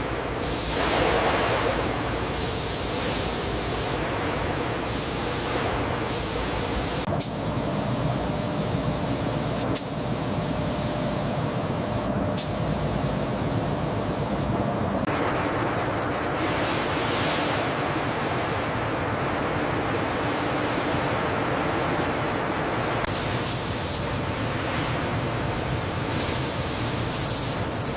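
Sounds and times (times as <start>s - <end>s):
sawmill machinery hiss and rumble: 0.0s - 21.8s.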